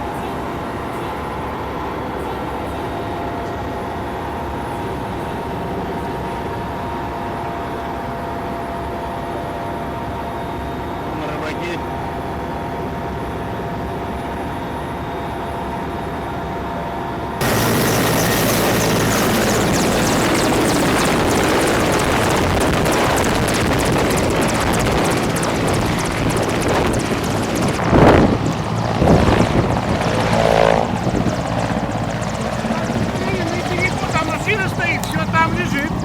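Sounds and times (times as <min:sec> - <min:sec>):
helicopter engine and rotor: 0:00.0 - 0:36.0.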